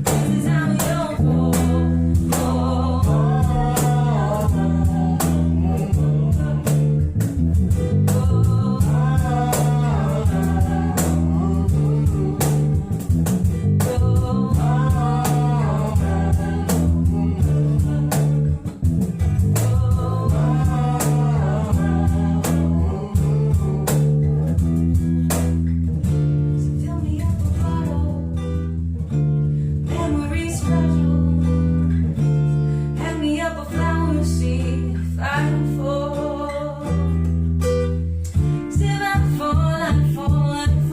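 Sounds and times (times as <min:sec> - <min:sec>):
person singing: 0:00.0 - 0:24.8, 0:29.8 - 0:31.6
strummed acoustic guitar: 0:00.0 - 0:40.9.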